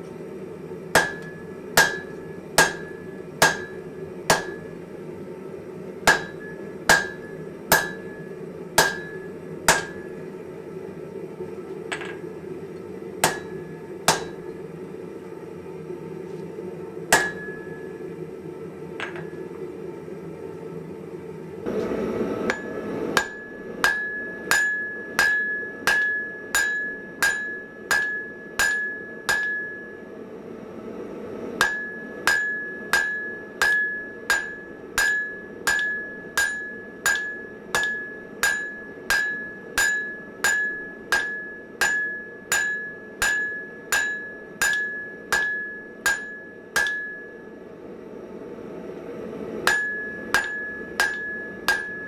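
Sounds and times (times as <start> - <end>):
hammer ringing on anvil: 1.0 - 4.8, 6.1 - 10.3, 11.9 - 12.3, 13.2 - 14.6, 17.1 - 18.0, 22.5 - 30.1, 31.6 - 47.6, 49.6 - 52.0.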